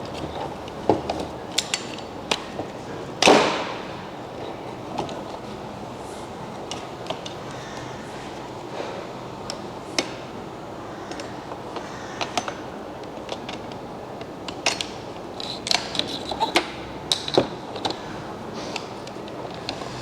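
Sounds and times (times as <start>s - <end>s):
workshop hum: 0.0s - 20.0s
parts creaking: 14.5s - 18.0s.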